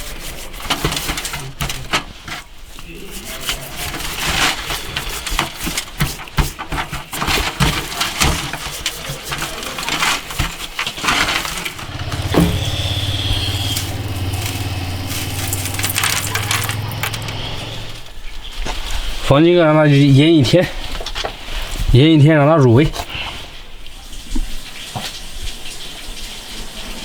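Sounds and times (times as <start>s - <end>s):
steady low hum: 11.8s - 18.0s
salt crunching on raw chicken: 13.6s - 17.4s.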